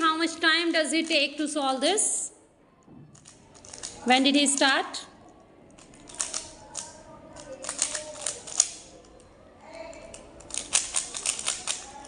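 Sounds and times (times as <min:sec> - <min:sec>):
rubik's cube plastic clicks: 0:03.2 - 0:09.3, 0:10.0 - 0:12.0.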